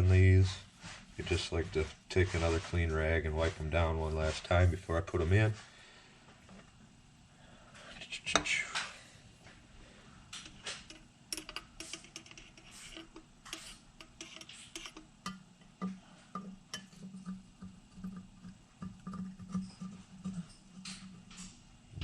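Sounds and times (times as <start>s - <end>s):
metal valves clicking and clinking: 10.3s - 21.7s.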